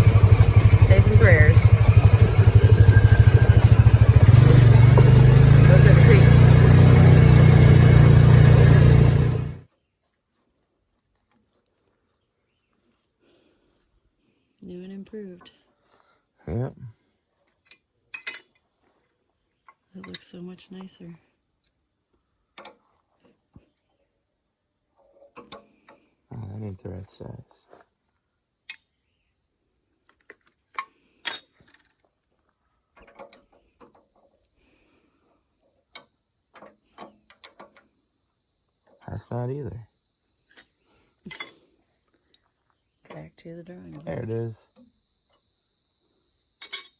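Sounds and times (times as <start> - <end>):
crickets chirring: 0.0 - 5.0, 9.8 - 46.9
vehicle engine running: 0.0 - 9.6
faint outdoor sounds: 0.0 - 46.9
metal wrenches clanking: 41.3 - 41.6.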